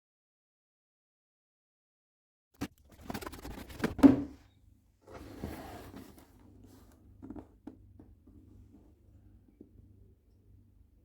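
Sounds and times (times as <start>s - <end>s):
cardboard box knocks and clicks: 3.8s - 4.4s
cardboard box rustle: 5.1s - 7.5s.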